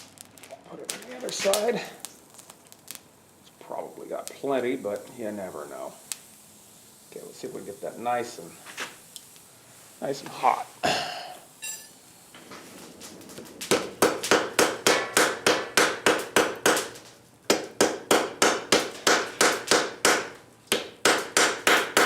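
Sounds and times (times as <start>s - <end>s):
faint hiss: 0.0s - 17.5s.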